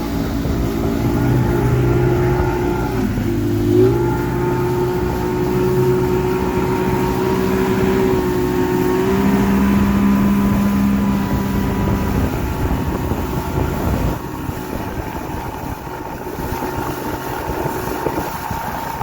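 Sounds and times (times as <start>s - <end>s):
motorboat engine hum: 0.0s - 19.0s
rushing water: 0.0s - 19.0s
wind: 0.0s - 19.0s.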